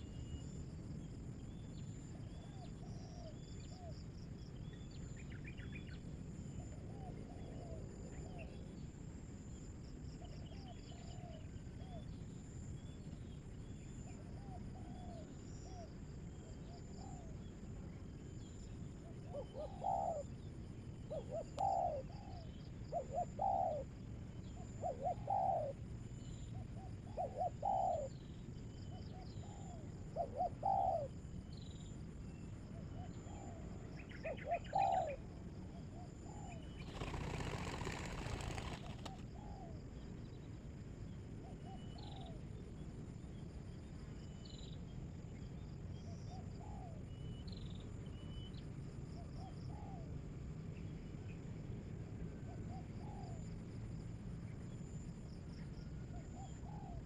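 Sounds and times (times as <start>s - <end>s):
insects chirping: 0.0s - 49.9s
dove cooing: 19.2s - 20.3s, 21.1s - 23.9s, 24.8s - 25.8s, 26.8s - 28.1s, 29.4s - 31.1s, 34.2s - 35.2s, 36.3s - 39.7s
wings flapping: 36.8s - 39.3s.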